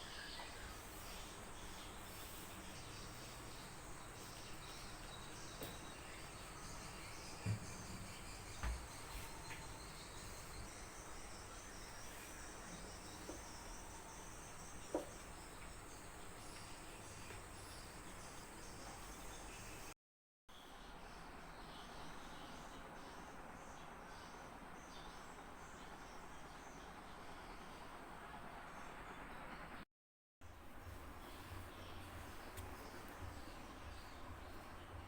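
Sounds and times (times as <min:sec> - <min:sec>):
insects chirring: 0:00.0 - 0:19.9.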